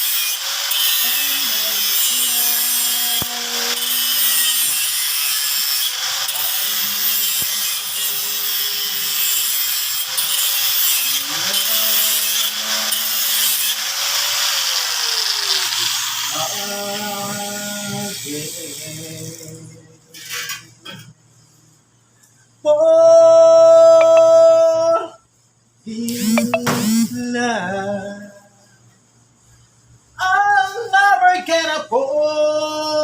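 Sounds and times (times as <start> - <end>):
power tool sanding metal: 0.0 - 16.4.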